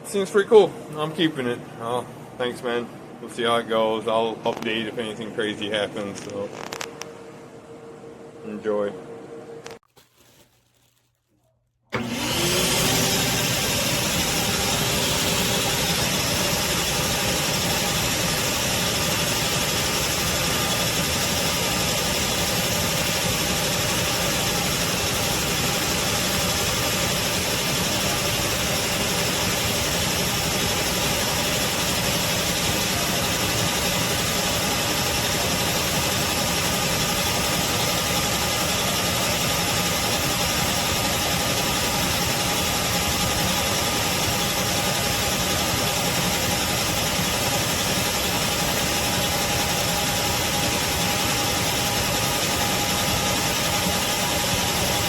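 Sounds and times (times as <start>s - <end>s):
shop vac motor running: 11.9s - 55.0s.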